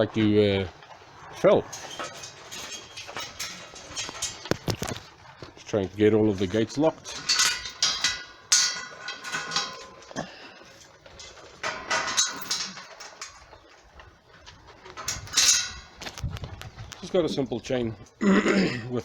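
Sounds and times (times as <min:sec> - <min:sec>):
metal chain rattling on gate: 0:01.2 - 0:13.9, 0:14.8 - 0:17.2.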